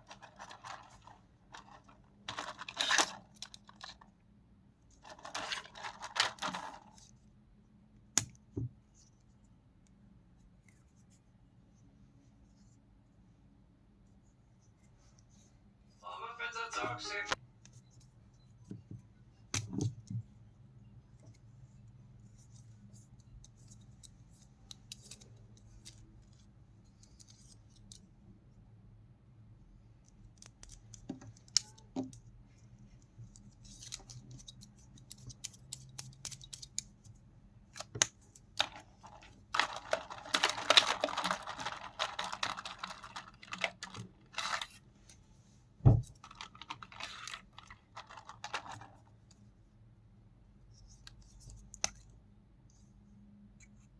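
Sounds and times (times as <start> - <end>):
packaging scratching and rustling: 0.0 - 4.0, 5.0 - 7.0, 38.6 - 44.8, 46.2 - 49.0
thump: 45.8 - 46.1.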